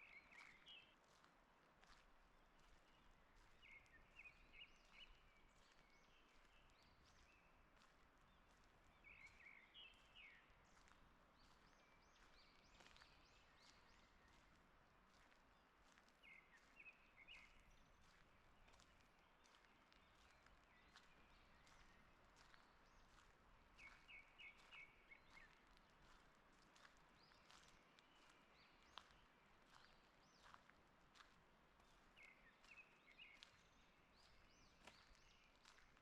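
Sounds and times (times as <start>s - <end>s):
faint birds singing: 0.0s - 1.2s, 1.9s - 36.0s
soft footsteps on forest path: 0.0s - 36.0s.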